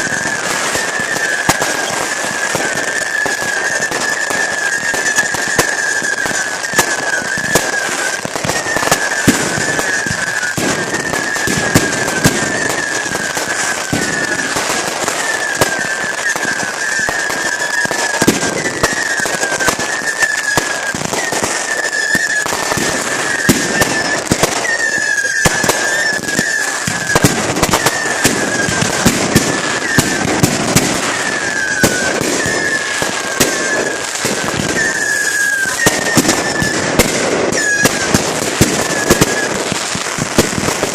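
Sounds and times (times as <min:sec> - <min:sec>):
fireworks crackling and banging: 0:00.0 - 0:40.9
high falling whistle tone: 0:31.0 - 0:36.9.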